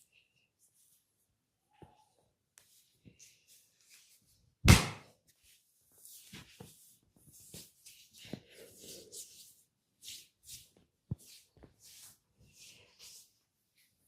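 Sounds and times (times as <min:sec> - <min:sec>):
hands rustling over skin: 0:05.2 - 0:14.0.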